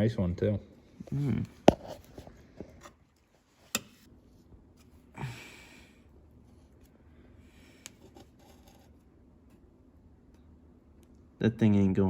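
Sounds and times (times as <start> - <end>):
person snorting: 1.0 - 1.6.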